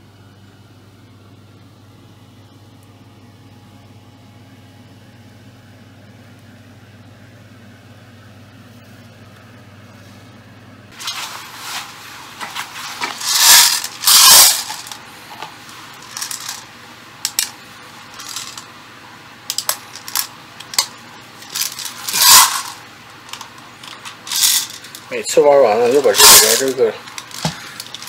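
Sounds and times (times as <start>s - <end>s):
metallic clicks and rattles: 17.3s - 17.5s, 19.5s - 25.0s.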